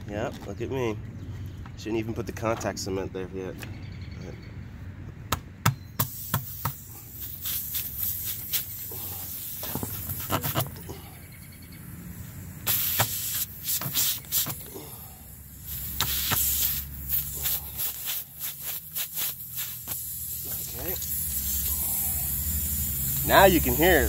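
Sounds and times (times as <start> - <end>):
air hissing from tire: 6.0 - 11.3, 12.0 - 24.0.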